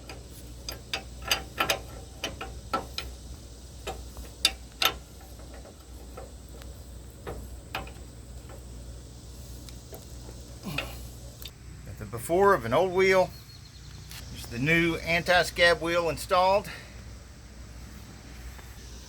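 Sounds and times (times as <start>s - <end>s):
hand ratchet clicking: 0.0s - 8.7s.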